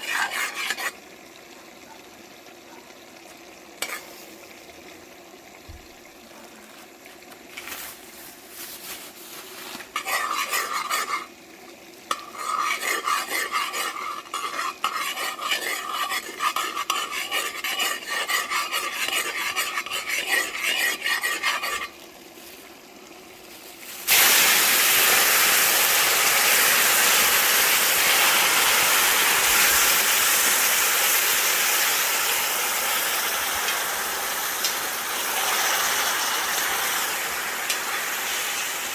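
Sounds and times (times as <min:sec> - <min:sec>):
spoon scraping in a pot: 0:00.0 - 0:01.0, 0:03.8 - 0:04.2, 0:09.9 - 0:11.3, 0:12.1 - 0:22.0
loud sizzle: 0:07.5 - 0:38.9.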